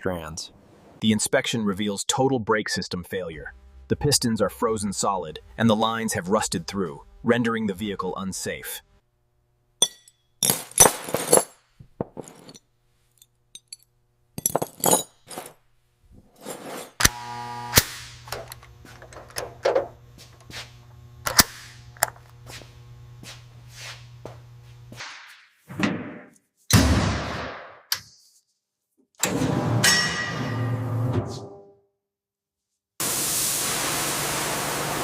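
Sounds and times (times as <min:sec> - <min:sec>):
low machine hum: 0:03.3 - 0:10.0.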